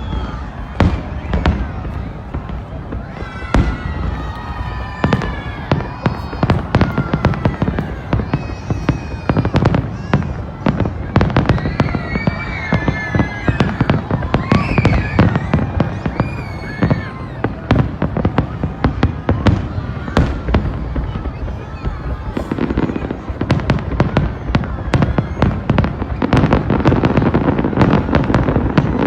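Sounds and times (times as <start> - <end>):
fireworks bursting: 0.0 - 29.0.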